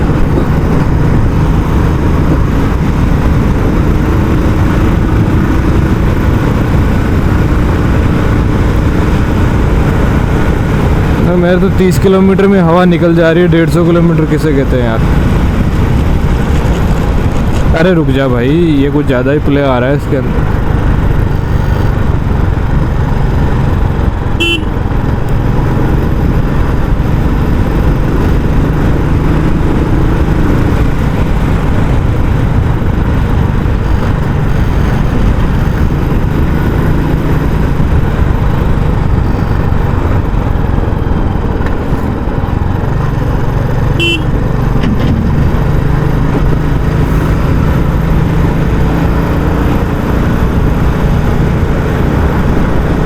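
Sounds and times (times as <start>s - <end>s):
motorcycle engine running: 0.0s - 53.0s
horn toots: 24.4s - 24.9s, 44.0s - 45.5s.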